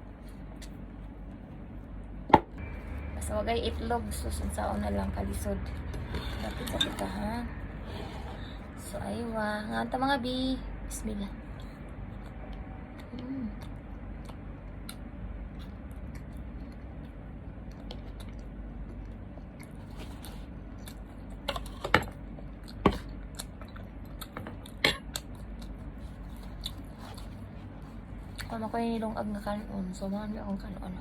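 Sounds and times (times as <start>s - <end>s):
low background hum: 0.0s - 31.0s
chewing and mouth clicks: 11.6s - 21.7s, 22.3s - 27.4s.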